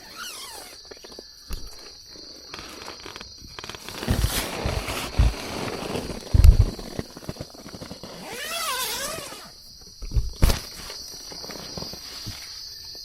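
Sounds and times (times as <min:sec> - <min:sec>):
high insect drone: 0:00.0 - 0:13.0
rustling close to microphone: 0:00.1 - 0:12.8
low thumps of handling: 0:03.0 - 0:12.4.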